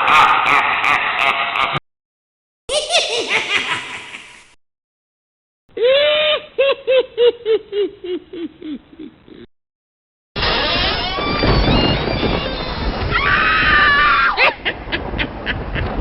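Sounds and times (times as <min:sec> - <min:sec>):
ghostly cackling laughter: 0:00.0 - 0:01.8, 0:02.7 - 0:04.4, 0:05.9 - 0:09.5, 0:14.2 - 0:16.0.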